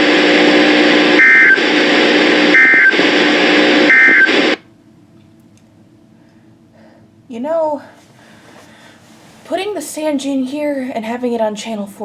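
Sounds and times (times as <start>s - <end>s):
radio static hiss: 0.0s - 4.6s
two-tone data bursts: 0.0s - 4.6s.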